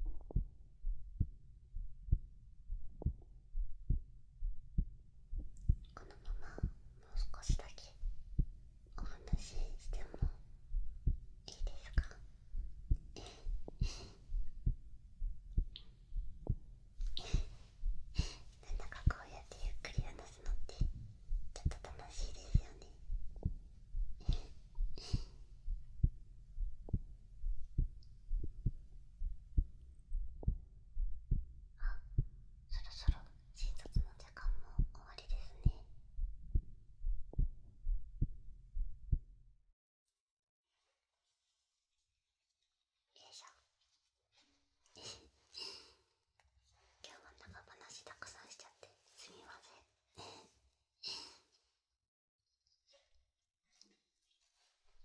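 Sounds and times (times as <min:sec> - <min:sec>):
heartbeat: 0:00.0 - 0:39.3
soft whispering: 0:05.4 - 0:10.6, 0:11.4 - 0:14.5, 0:15.6 - 0:23.6, 0:24.2 - 0:25.5, 0:31.8 - 0:35.9, 0:43.1 - 0:43.8, 0:46.8 - 0:51.5
person breathing: 0:13.2 - 0:14.5, 0:17.0 - 0:18.7, 0:24.2 - 0:25.5.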